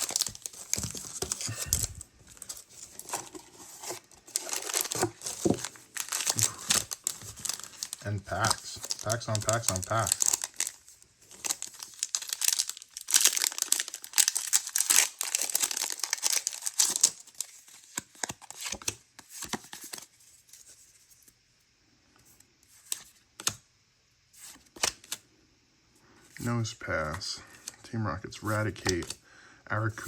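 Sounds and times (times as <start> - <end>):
foil wrapper tearing and crinkling: 0.0 - 18.8
cards clicking and tapping: 28.7 - 29.2.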